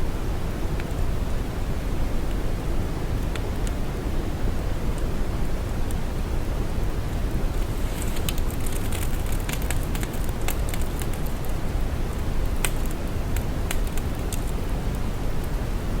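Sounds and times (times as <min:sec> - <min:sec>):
deep brown noise hiss: 0:00.0 - 0:16.0
faint irregular crackles: 0:07.1 - 0:14.9.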